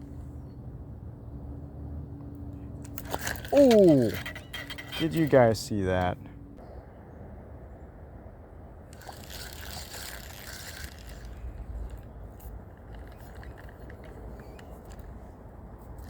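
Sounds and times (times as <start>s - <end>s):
fishing gear clicks and scrapes: 2.8s - 5.7s, 8.9s - 16.0s.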